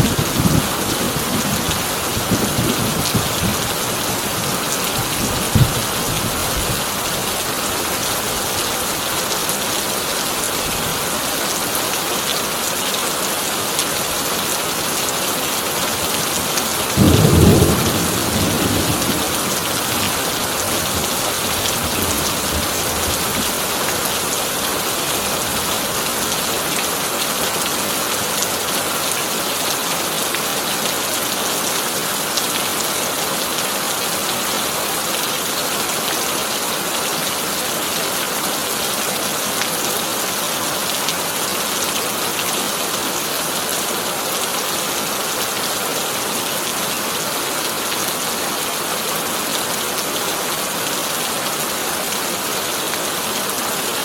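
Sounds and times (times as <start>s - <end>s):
heavy rain on a tin roof: 0.0s - 54.0s.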